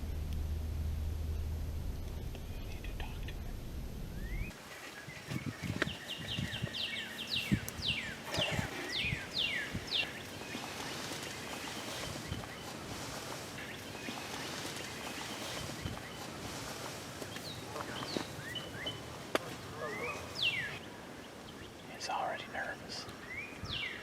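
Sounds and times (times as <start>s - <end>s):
outdoor background hiss: 0.0s - 24.0s
songbird whistling: 4.2s - 4.6s.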